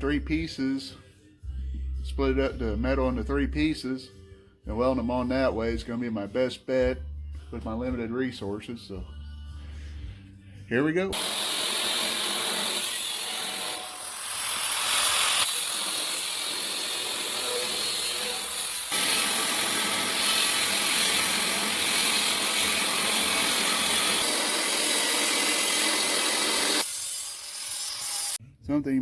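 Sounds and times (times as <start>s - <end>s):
angle grinder cutting sheet metal: 11.2s - 28.4s.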